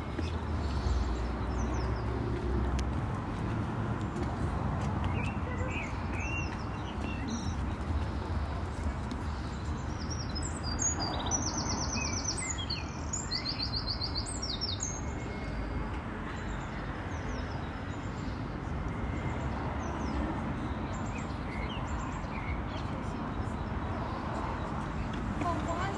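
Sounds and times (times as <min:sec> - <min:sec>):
city background rumble: 0:00.0 - 0:25.9.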